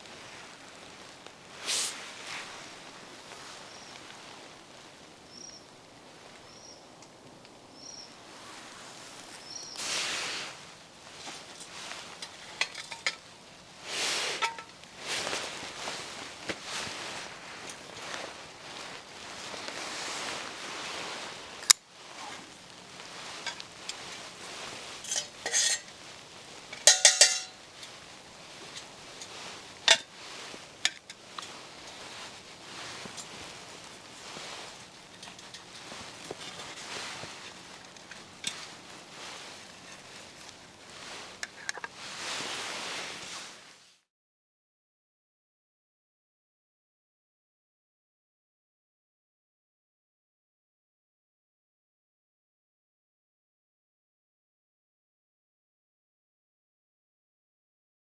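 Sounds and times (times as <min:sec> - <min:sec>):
outdoor background noise: 0:00.0 - 0:43.9
bird calling: 0:03.3 - 0:04.4, 0:05.2 - 0:06.9, 0:07.7 - 0:08.2, 0:09.3 - 0:10.1
metal cookware scraping: 0:10.4 - 0:19.4, 0:20.2 - 0:42.0.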